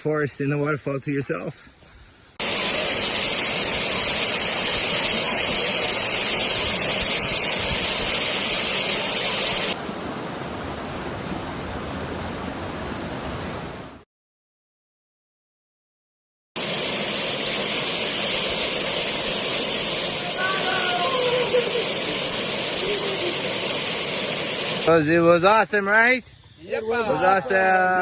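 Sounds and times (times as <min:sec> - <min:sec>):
waterfall rushing: 0:02.4 - 0:13.8, 0:16.6 - 0:25.0.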